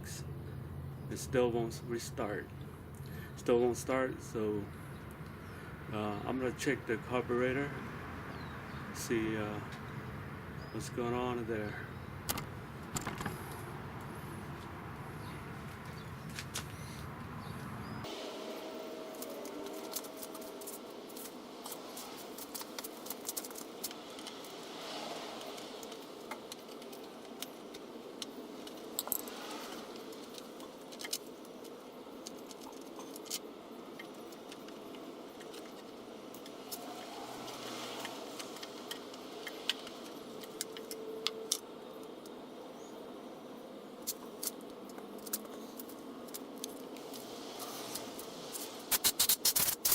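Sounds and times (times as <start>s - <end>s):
steady hiss: 18.0s - 49.9s.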